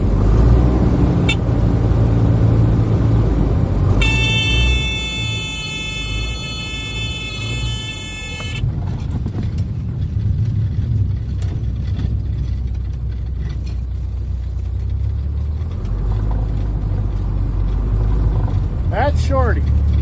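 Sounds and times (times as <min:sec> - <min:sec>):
low rumble of plane engine: 0:00.0 - 0:20.0
stall warning horn steady tone: 0:01.0 - 0:03.0, 0:03.8 - 0:08.8.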